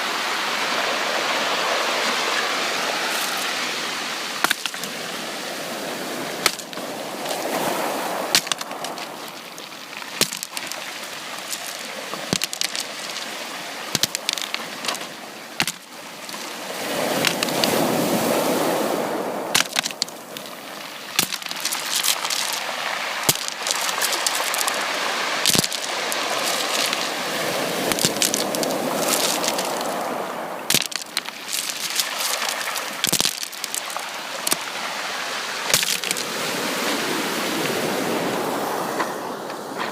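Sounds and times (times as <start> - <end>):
sea waves washing in: 0.0 - 39.9
sharp clicks and cracks: 8.3 - 9.0, 19.6 - 20.1, 23.2 - 24.8, 25.4 - 27.1, 27.9 - 29.9, 30.7 - 34.6.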